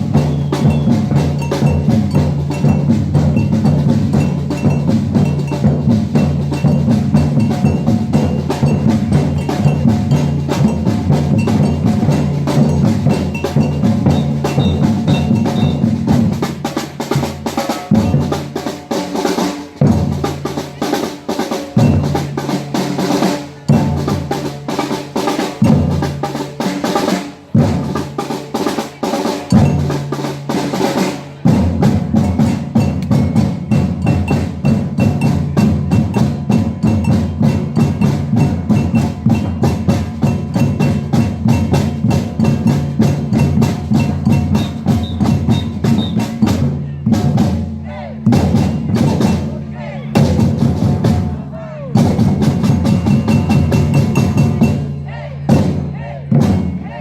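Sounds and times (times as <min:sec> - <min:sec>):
drum ensemble groove: 0:00.0 - 0:57.0
heavy low drum stroke: 0:31.3 - 0:56.8.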